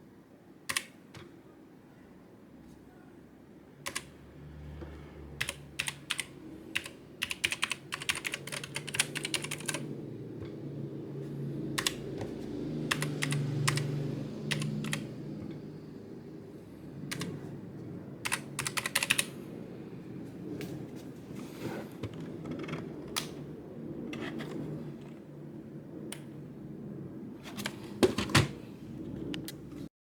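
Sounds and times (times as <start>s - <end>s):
mechanical keyboard typing: 0.7s - 1.0s, 3.8s - 4.2s, 5.4s - 9.9s, 11.8s - 15.2s, 17.0s - 17.4s, 18.2s - 19.4s.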